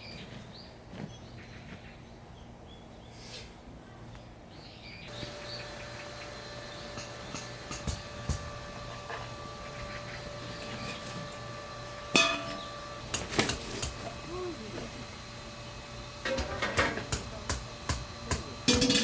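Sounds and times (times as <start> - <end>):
objects clattering: 6.8 - 14.2, 18.6 - 19.0
sharp ringing clink: 12.1 - 13.2.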